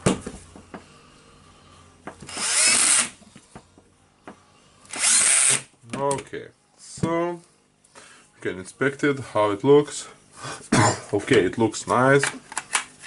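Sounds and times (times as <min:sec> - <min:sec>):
power screwdriver motor spinning: 0:02.3 - 0:03.2, 0:04.9 - 0:05.7.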